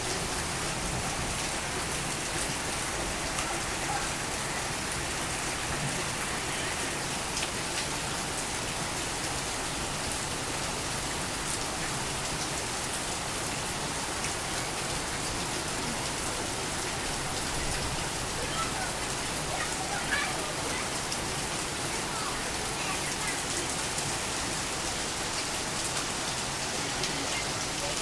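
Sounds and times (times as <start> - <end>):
torrential rain: 0.0 - 28.0.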